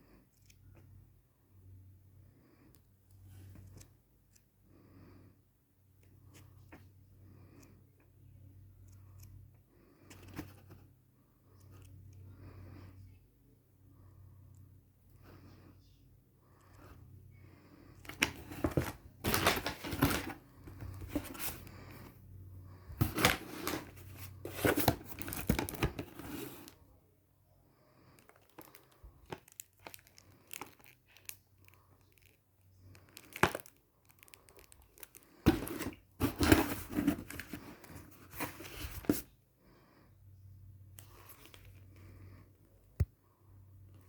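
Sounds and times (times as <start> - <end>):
packaging tearing and rustling: 18.1 - 20.4, 28.2 - 37.7.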